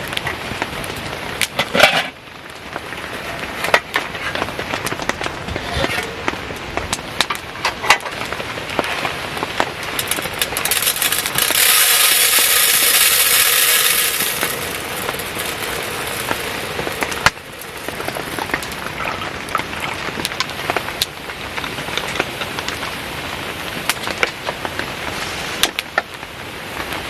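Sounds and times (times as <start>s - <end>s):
campfire crackling and popping: 0.0s - 27.0s
loud steady hiss: 0.0s - 27.0s
rain pattering: 0.0s - 27.0s.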